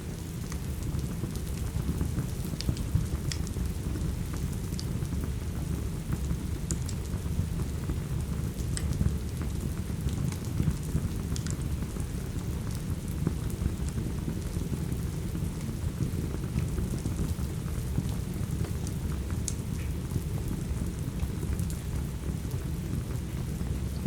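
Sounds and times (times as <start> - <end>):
steady rain: 0.0 - 24.0
wood fire crackling: 0.1 - 24.0.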